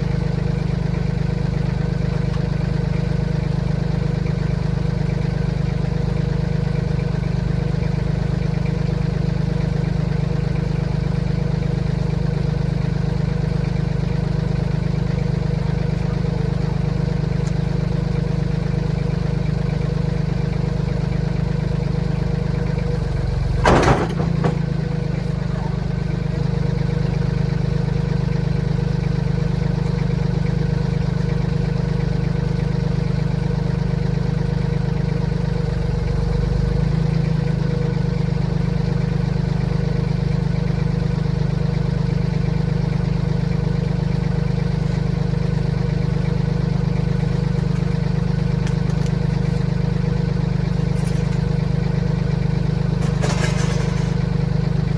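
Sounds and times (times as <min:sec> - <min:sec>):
tractor engine running: 0:00.0 - 0:54.9
sharp metallic clank: 0:23.5 - 0:25.6, 0:53.0 - 0:54.7.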